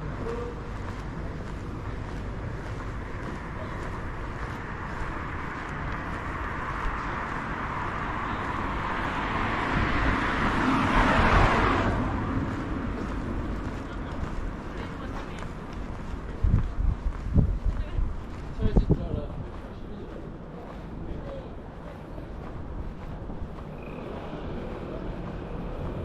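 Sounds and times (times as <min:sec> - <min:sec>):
vehicle passing by: 0:00.0 - 0:16.0, 0:21.8 - 0:26.0
background traffic hum: 0:00.0 - 0:26.0.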